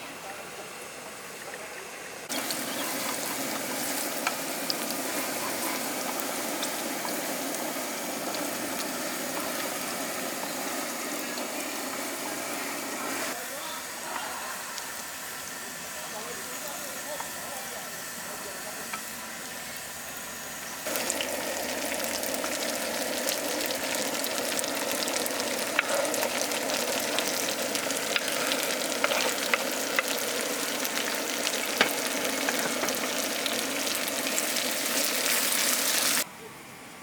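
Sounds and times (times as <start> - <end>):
food sizzling in hot oil: 0.7 - 36.3
oil popping and crackling: 2.3 - 12.2, 20.8 - 36.2.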